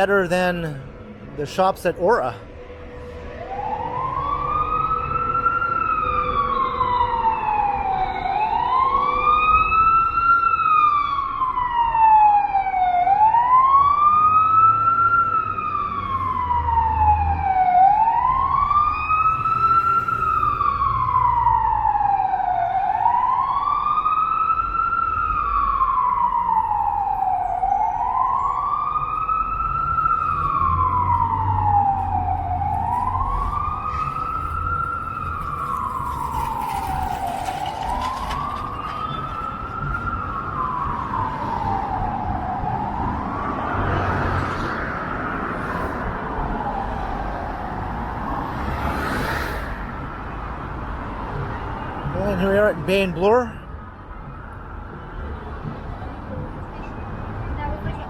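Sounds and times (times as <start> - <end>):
emergency siren wailing: 0.0 - 57.8
street traffic rumble: 0.0 - 58.0.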